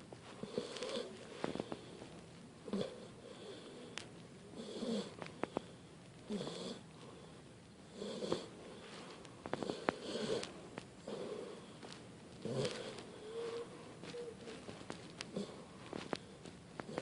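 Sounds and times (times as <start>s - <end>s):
dog snoring: 0.3s - 1.9s, 2.6s - 7.3s, 7.9s - 11.8s, 12.4s - 14.4s, 15.2s - 16.2s, 16.8s - 17.0s
faint sharp clicks: 3.9s - 4.3s.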